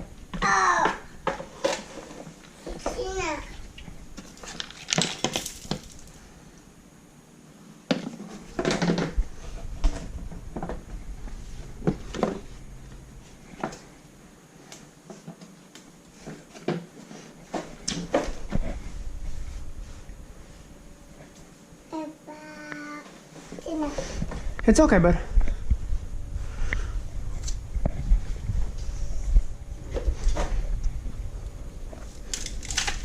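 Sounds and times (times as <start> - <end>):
tools and parts clattering: 4.2 - 6.2, 32.1 - 33.0.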